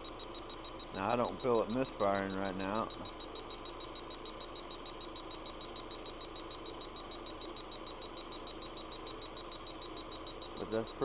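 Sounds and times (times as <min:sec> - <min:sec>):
electrical tester beeping rapidly: 0:00.0 - 0:11.0.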